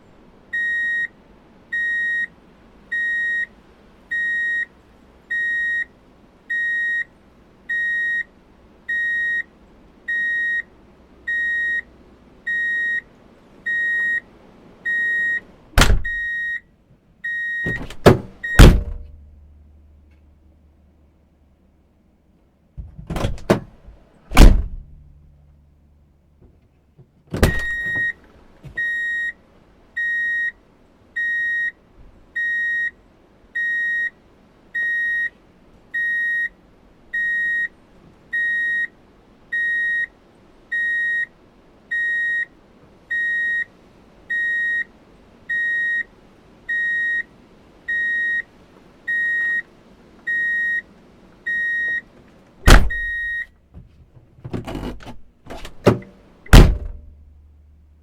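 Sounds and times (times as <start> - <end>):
reversing alarm beeping: 0.6 - 1.1, 1.8 - 2.3, 2.9 - 3.5, 4.1 - 4.7, 5.3 - 5.9, 6.5 - 7.1, 7.7 - 8.3, 8.9 - 9.5, 10.1 - 10.7, 11.3 - 11.9, 12.5 - 13.0, 13.7 - 14.2, 14.9 - 15.4, 16.1 - 16.6, 17.3 - 18.7, 27.6 - 28.2, 28.8 - 29.4, 30.0 - 30.6, 31.2 - 31.8, 32.4 - 33.0, 33.6 - 34.2, 34.8 - 35.4, 36.0 - 36.5, 37.2 - 37.7, 38.4 - 38.9, 39.6 - 40.1, 40.8 - 41.3, 41.9 - 42.5, 43.1 - 43.7, 44.3 - 44.9, 45.5 - 46.1, 46.7 - 47.3, 47.9 - 48.5, 49.1 - 49.7, 50.3 - 50.9, 51.5 - 52.0, 52.7 - 53.5
door bang: 15.8 - 16.2, 17.7 - 19.2, 22.8 - 25.1, 27.3 - 28.0, 52.7 - 53.2, 54.7 - 57.2
knocks: 54.5 - 57.1.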